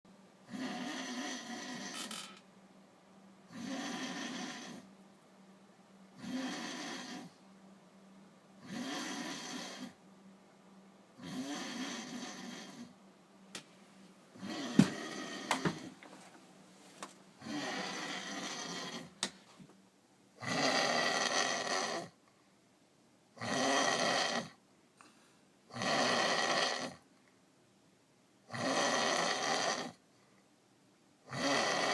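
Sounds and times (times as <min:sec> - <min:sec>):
man snoring: 0:00.5 - 0:02.3, 0:03.5 - 0:04.8, 0:06.2 - 0:07.3, 0:08.6 - 0:10.0, 0:11.2 - 0:12.9, 0:14.4 - 0:15.9, 0:17.4 - 0:19.1, 0:20.4 - 0:22.1, 0:23.4 - 0:24.6, 0:25.7 - 0:27.0, 0:28.5 - 0:30.0, 0:31.3 - 0:31.9.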